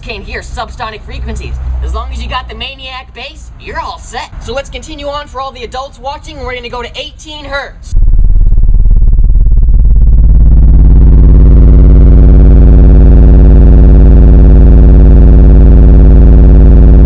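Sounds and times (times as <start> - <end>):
distorted subwoofer test tone buzz: 7.9 - 17.0.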